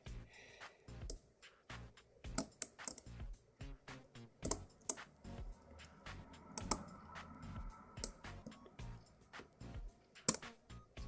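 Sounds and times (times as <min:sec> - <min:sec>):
lock pick clicking and scraping: 0:02.3 - 0:03.1, 0:04.4 - 0:05.0.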